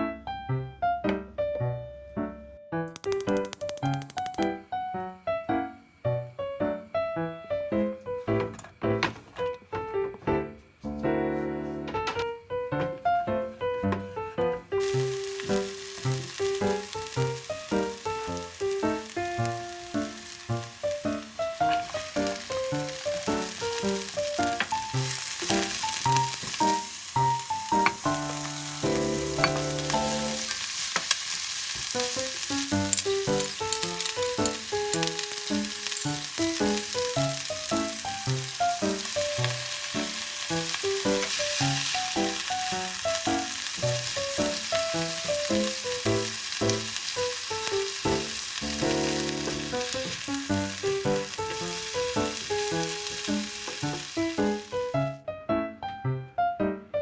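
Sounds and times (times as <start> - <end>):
background music: 0.0 - 30.7, 31.8 - 56.9
food sizzling in a pan: 14.8 - 55.1.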